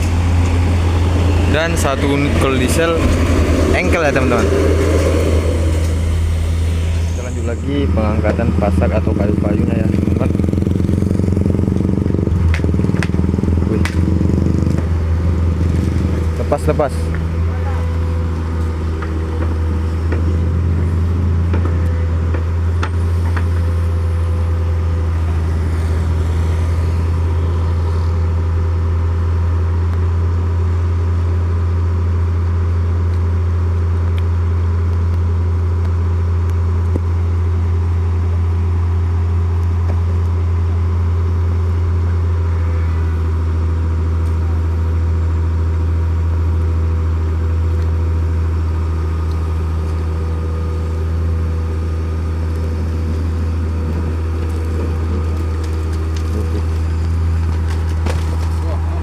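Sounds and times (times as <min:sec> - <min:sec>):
large engine droning: 0:00.0 - 0:59.0.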